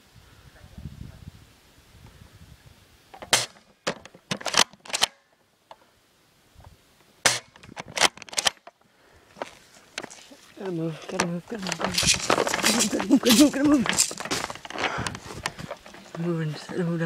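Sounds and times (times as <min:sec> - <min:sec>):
airsoft guns firing: 0:03.2 - 0:03.7, 0:04.3 - 0:05.2, 0:07.3 - 0:08.6.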